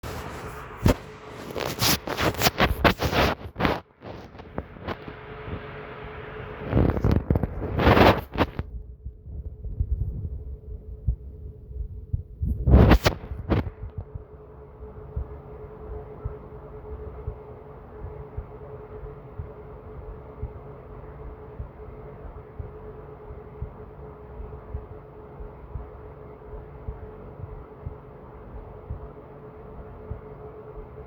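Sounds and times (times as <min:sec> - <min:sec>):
microphone scraping and rubbing: 0:00.0 - 0:05.2, 0:06.6 - 0:10.4, 0:12.4 - 0:14.2
faint steady hum: 0:00.0 - 0:31.0
stomach rumbling: 0:06.6 - 0:10.4, 0:12.1 - 0:14.3.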